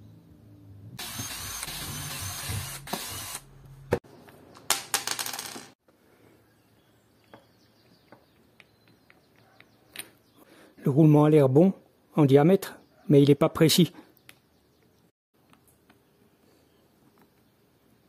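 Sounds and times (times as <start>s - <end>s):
electric drill running: 1.0s - 3.5s.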